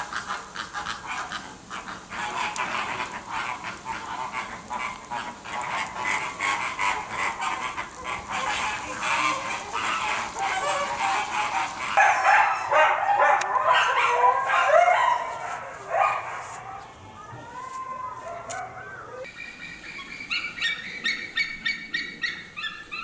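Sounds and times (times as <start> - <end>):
chorus of chattering animal calls: 6.0 - 19.3
lower pitched animal calls: 12.0 - 19.3.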